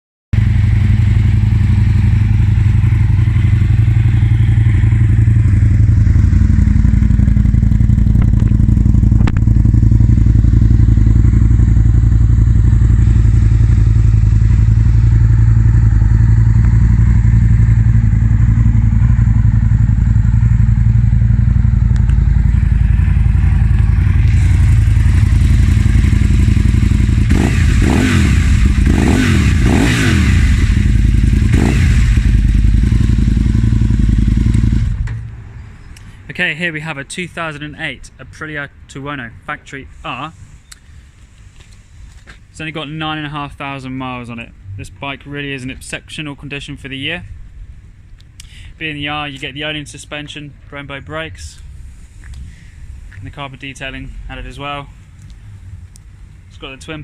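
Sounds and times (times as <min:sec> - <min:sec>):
motorcycle engine idling: 0:00.4 - 0:35.7
motorcycle throttle blips: 0:00.4 - 0:36.1.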